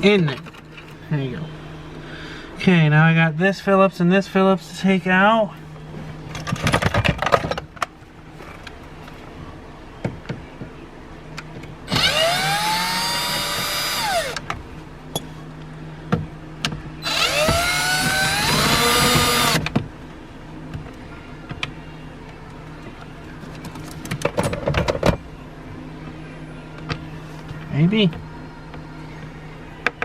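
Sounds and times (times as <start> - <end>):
electric drill motor whine: 11.9 - 14.4, 17.0 - 19.6.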